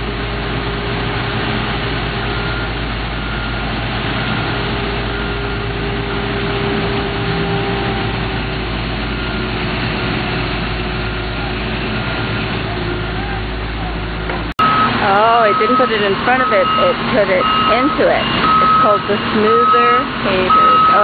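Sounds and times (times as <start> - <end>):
heavy machinery engines running: 0.0 - 21.0.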